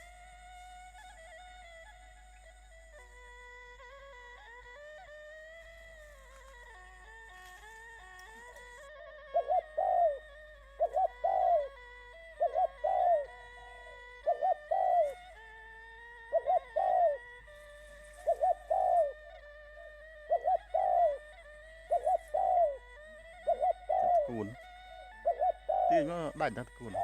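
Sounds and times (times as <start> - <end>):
dove cooing: 5.5 - 27.0.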